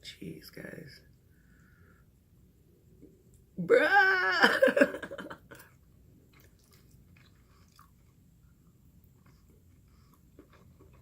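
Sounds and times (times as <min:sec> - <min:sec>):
faint chewing with mouth clicks: 0:05.5 - 0:11.0.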